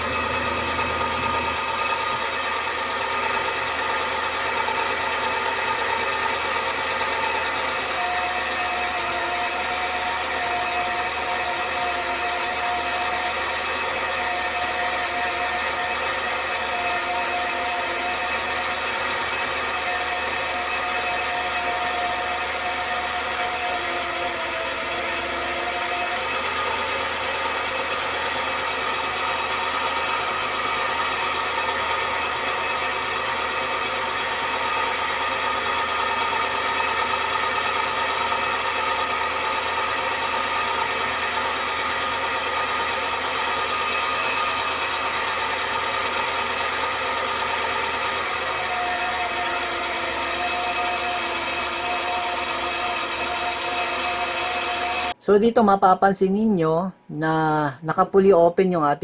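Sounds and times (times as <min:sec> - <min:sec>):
car engine idling: 0:00.0 - 0:07.8.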